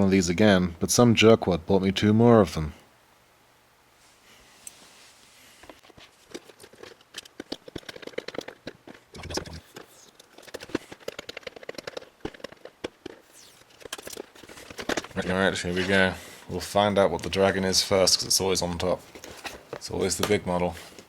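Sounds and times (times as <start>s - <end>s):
cardboard packaging rustling and clicking: 5.7s - 15.9s.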